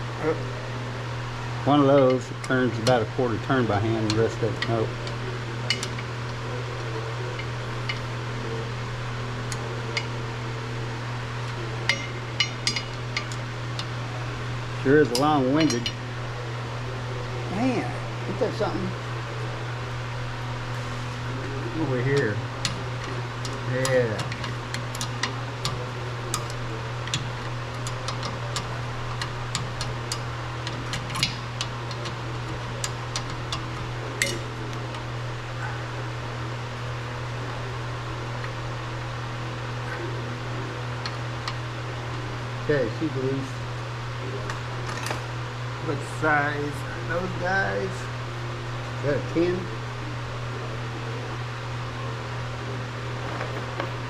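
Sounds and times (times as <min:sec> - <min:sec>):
steady low hum: 0:00.0 - 0:54.0
hand tools clicking on metal: 0:22.6 - 0:35.0.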